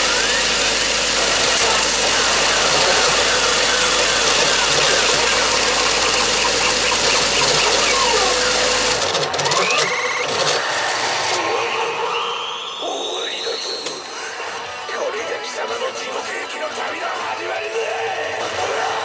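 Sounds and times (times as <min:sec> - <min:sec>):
pachinko machine rumbling and chirping: 0:00.0 - 0:12.5.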